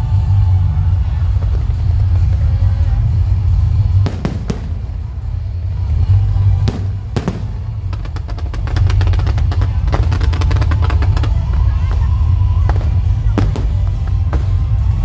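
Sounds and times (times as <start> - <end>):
heavy low rumble: 0.0 - 15.0
fireworks bangs: 1.0 - 15.0
fireworks crackling pops: 3.9 - 5.5, 6.6 - 15.0.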